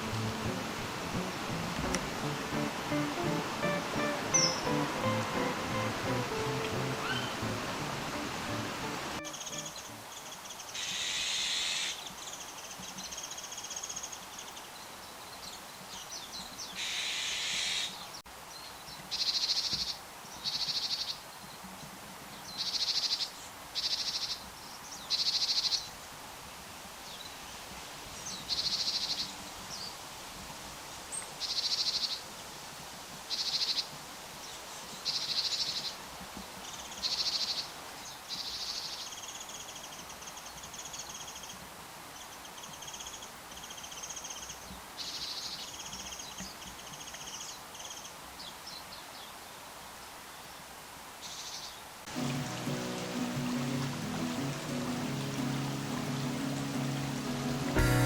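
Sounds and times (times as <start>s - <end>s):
bird giving harsh buzzy calls: 0.0s - 10.0s.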